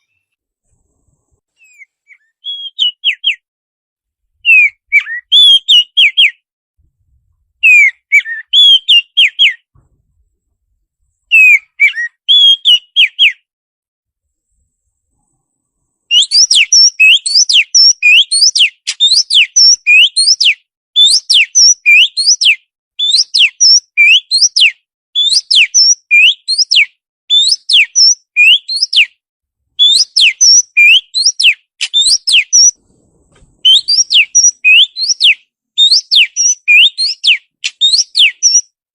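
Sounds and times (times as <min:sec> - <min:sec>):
quick whistled bird notes: 0:00.0 - 0:03.4, 0:04.4 - 0:06.4, 0:07.1 - 0:09.7, 0:11.3 - 0:13.4, 0:16.1 - 0:29.1, 0:29.8 - 0:38.7
bird chirping phrases: 0:01.6 - 0:03.4, 0:04.4 - 0:06.4, 0:11.0 - 0:13.4, 0:15.9 - 0:29.1, 0:29.8 - 0:38.7.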